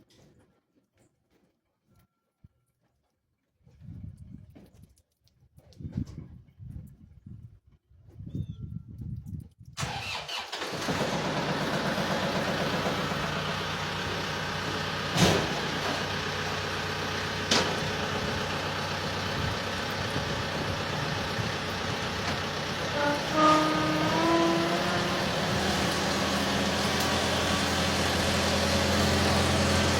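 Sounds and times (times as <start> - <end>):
engine starting and running: 9.7 - 29.9.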